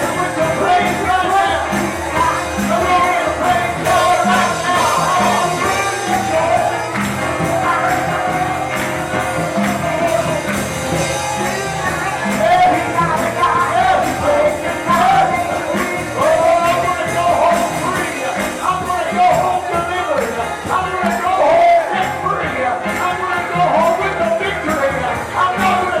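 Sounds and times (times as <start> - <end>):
church worship band: 0.0 - 26.0
tambourine: 0.0 - 26.0
voices singing: 0.0 - 26.0.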